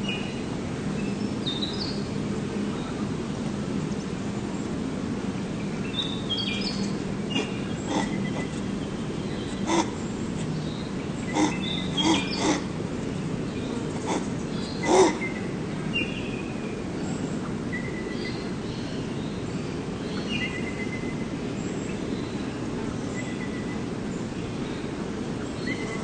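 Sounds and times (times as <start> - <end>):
outdoor background noise: 0.0 - 26.0
animal calls: 7.3 - 12.9, 13.7 - 15.6.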